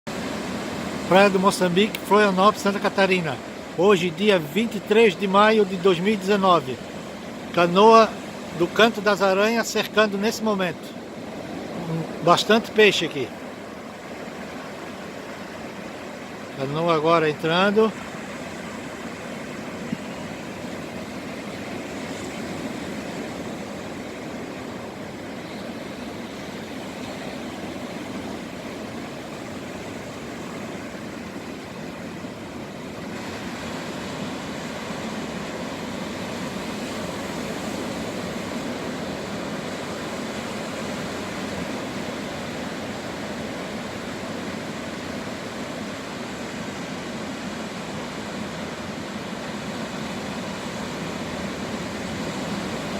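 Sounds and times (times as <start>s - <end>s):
surf breaking on beach: 0.1s - 52.9s.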